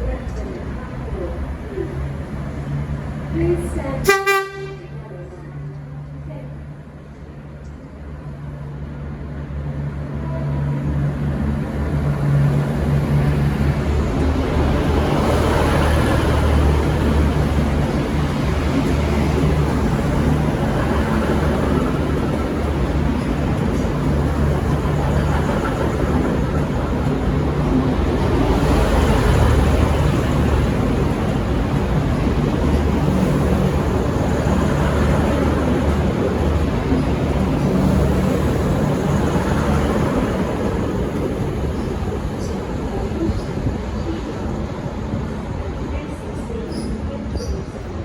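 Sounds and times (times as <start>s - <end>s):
train diesel engines under load: 0.0s - 48.0s
wheel and rail noise: 4.9s - 48.0s.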